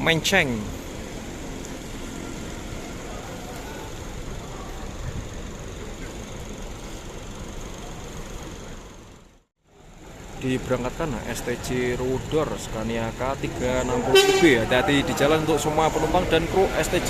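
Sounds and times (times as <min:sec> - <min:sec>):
bus engine idling: 0:00.0 - 0:17.0.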